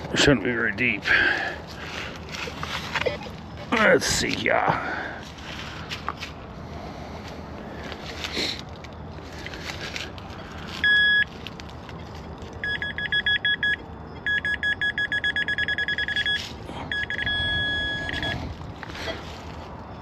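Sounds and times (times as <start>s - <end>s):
metal detector beeping: 10.8s - 11.3s, 12.6s - 19.2s.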